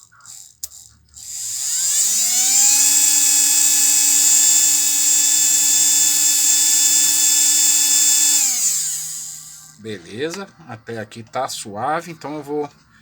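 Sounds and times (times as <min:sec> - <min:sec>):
cordless screwdriver motor whine: 0:00.3 - 0:09.7.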